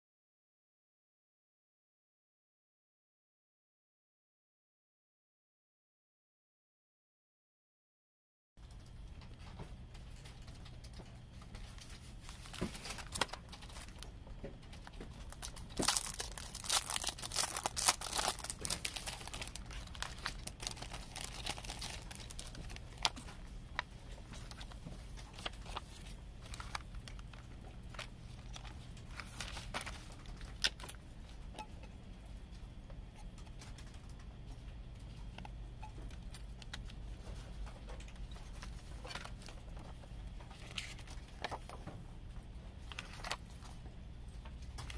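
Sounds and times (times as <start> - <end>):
plastic wrap crinkling: 11.5 - 31.0, 42.8 - 43.8.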